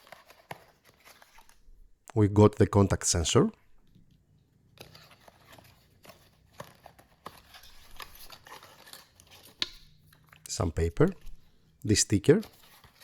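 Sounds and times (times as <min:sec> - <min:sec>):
packaging rustling: 0:00.0 - 0:01.6, 0:04.8 - 0:10.4, 0:12.4 - 0:13.0.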